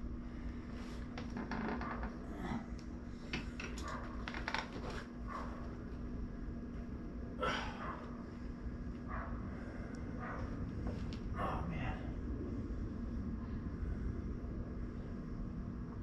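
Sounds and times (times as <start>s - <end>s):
steady low hum: 0.0s - 16.0s
person breathing hard and grunting: 2.2s - 2.8s, 7.4s - 8.1s, 11.4s - 13.0s.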